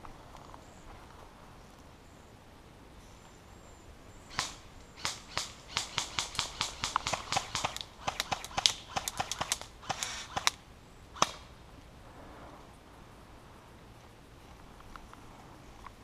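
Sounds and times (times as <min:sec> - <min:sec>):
airsoft guns firing: 0:04.3 - 0:10.6, 0:11.2 - 0:11.5.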